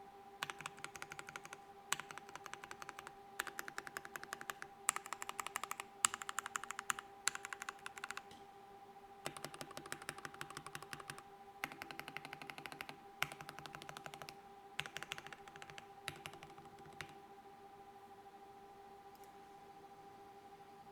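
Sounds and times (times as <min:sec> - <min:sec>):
faint steady hum: 0:00.0 - 0:20.9
mechanical keyboard typing: 0:00.4 - 0:08.3, 0:09.3 - 0:17.2.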